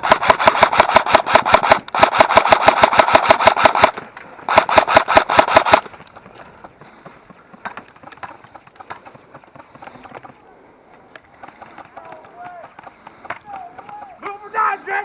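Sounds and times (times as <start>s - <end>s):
airsoft rifle automatic fire: 0.0s - 5.9s
faint clicks: 7.6s - 14.4s.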